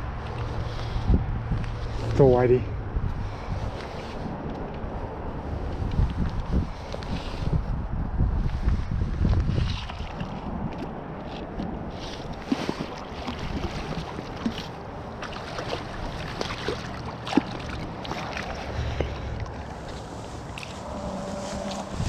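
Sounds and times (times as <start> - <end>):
wind buffeting microphone: 0.0 - 22.0
river water rushing: 12.6 - 22.0.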